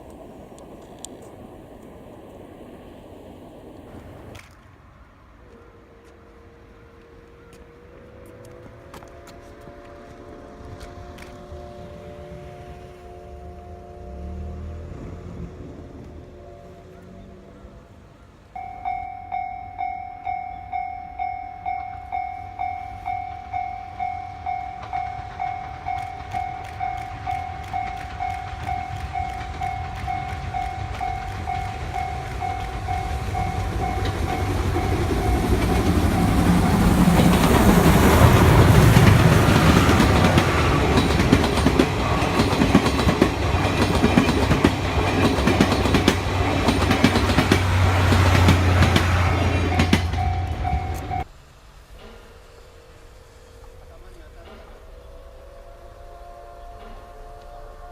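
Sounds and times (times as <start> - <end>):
wheels clacking over rail joints: 0.0 - 4.7, 18.6 - 52.6
steam train passing: 0.0 - 57.9
level crossing bell ringing: 18.6 - 36.9, 49.6 - 51.3.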